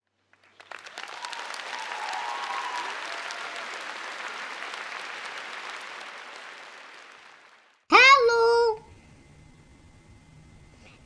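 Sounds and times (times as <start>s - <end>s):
crowd applause: 0.3s - 7.8s.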